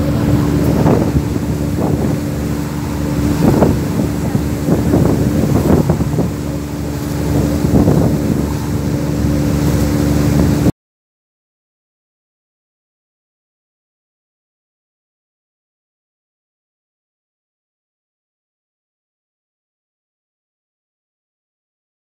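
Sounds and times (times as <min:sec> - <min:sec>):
boat engine humming: 0:00.0 - 0:10.7
wind on microphone: 0:00.0 - 0:10.7.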